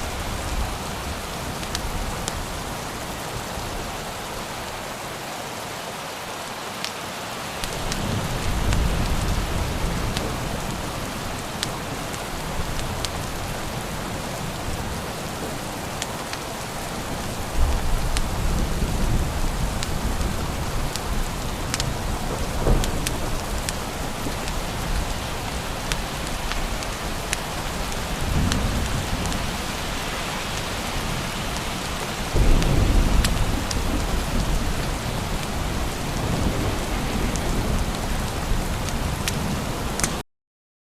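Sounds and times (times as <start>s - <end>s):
heavy rain: 0.0s - 40.2s
thunder rolling: 17.1s - 26.0s, 30.8s - 39.7s.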